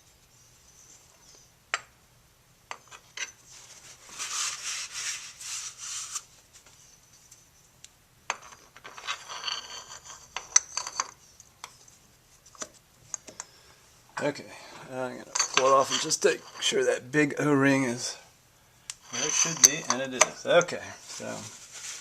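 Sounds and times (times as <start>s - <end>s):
hands rubbing metal parts: 2.7s - 7.7s, 8.3s - 13.4s, 15.2s - 16.8s, 18.9s - 22.0s.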